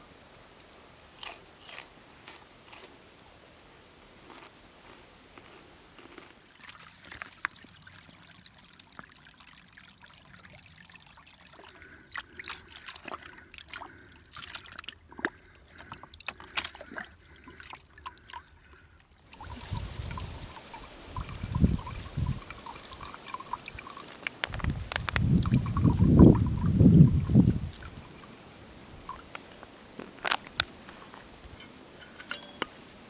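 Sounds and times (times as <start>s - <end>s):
water trickling and pouring: 6.5s - 29.6s.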